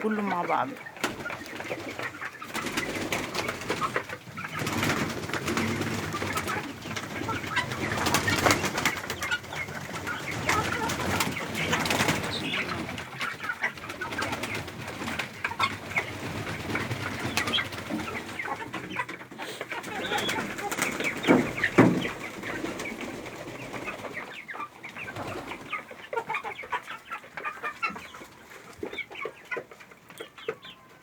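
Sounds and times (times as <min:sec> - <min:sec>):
pigeons cooing: 0:00.0 - 0:31.0.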